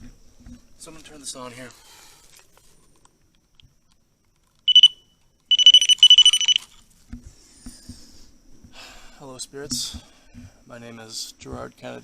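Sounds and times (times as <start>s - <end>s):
high electronic beeping: 4.7s - 6.6s.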